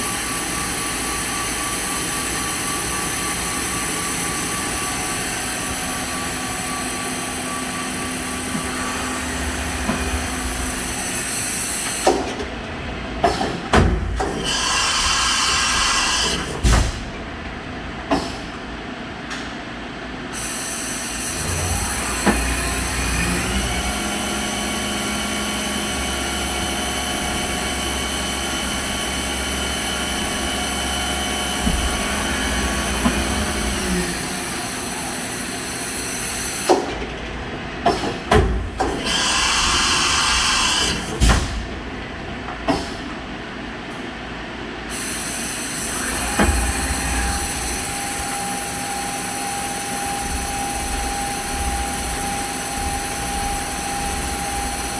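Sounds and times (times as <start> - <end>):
machine motors whining: 0.0 - 12.7, 20.8 - 37.2, 45.0 - 54.9
hiss: 14.3 - 17.0, 38.9 - 41.6.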